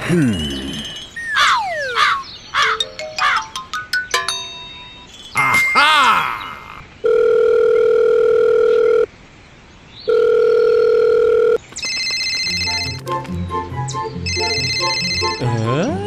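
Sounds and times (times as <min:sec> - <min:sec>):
telephone ringback tone: 0:07.0 - 0:09.1, 0:10.1 - 0:13.0, 0:14.3 - 0:15.4.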